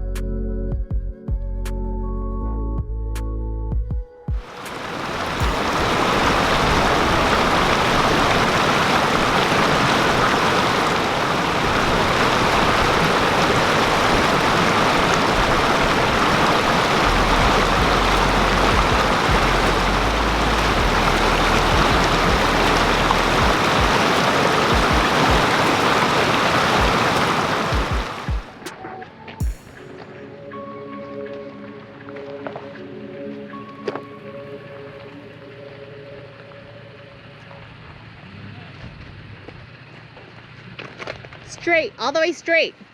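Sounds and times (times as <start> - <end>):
flowing water rushing: 4.4 - 30.1
low rumble: 15.3 - 25.5.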